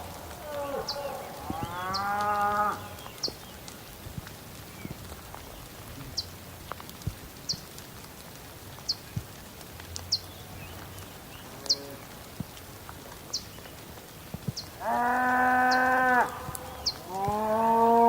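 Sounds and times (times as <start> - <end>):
rain hiss: 0.0 - 18.0
water drips: 0.0 - 18.0
cow mooing: 14.8 - 16.5, 17.1 - 18.0
bird chirping: 16.5 - 17.8.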